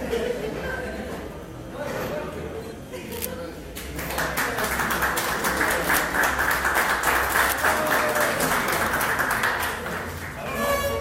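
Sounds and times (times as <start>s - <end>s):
audience applauding: 3.9s - 10.5s.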